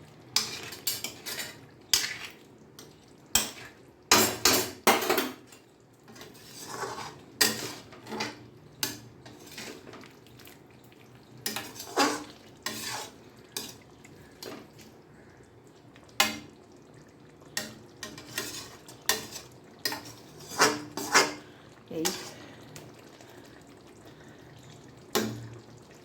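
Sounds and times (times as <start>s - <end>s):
metal utensil scraping a pan: 0.3s - 10.0s, 11.4s - 13.8s, 17.6s - 22.4s.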